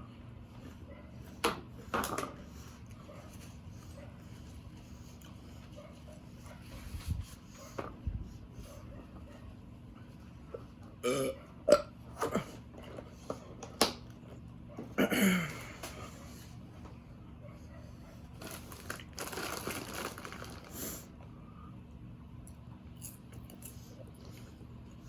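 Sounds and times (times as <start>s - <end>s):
person burping: 11.0s - 12.6s, 15.0s - 15.8s.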